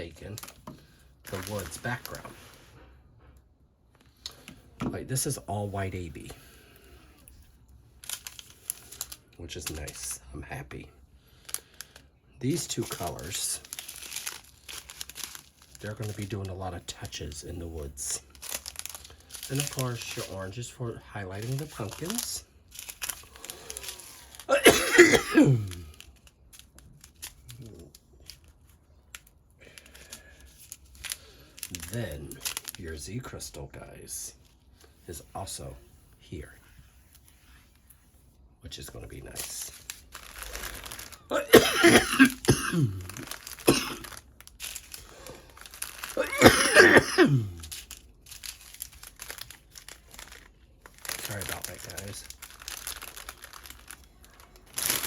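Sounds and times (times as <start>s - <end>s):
man coughing: 24.5s - 25.9s, 41.3s - 44.1s, 46.2s - 47.6s.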